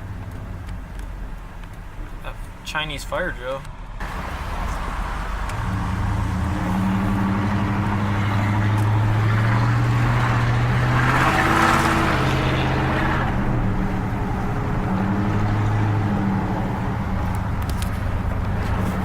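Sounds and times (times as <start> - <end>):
road noise: 0.0 - 19.0
truck engine running: 3.8 - 19.0.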